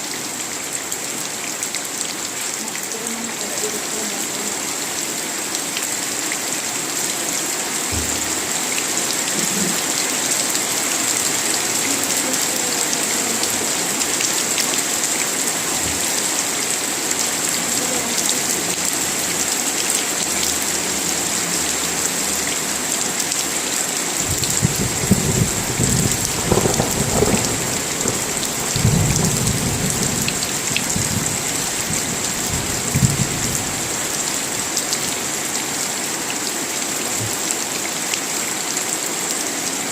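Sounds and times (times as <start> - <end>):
heavy rain: 0.0 - 39.9
rolling thunder: 24.2 - 31.4.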